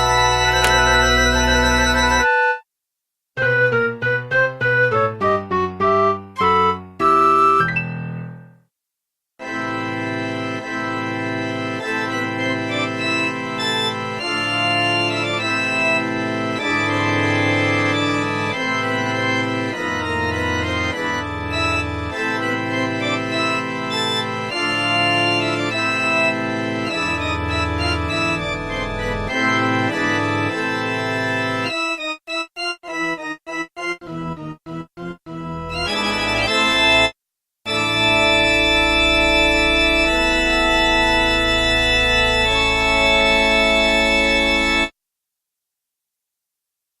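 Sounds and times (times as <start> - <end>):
sustained organ chords: 0.0 - 2.4, 9.4 - 37.1, 37.7 - 44.9.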